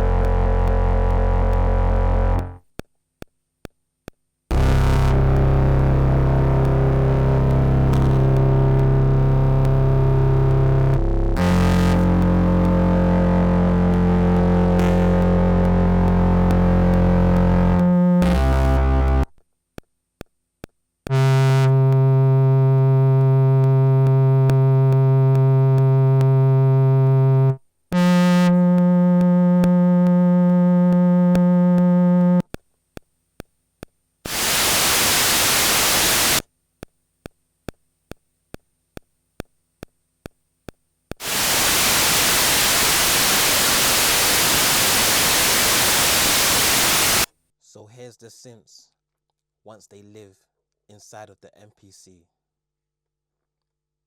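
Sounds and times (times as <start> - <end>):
synthesizer held notes: 0.0 - 2.6, 4.5 - 19.3, 21.1 - 32.4
faint steady clicks: 27.5 - 34.6, 36.4 - 41.6
white noise hiss bursts: 34.3 - 36.4, 41.2 - 47.3.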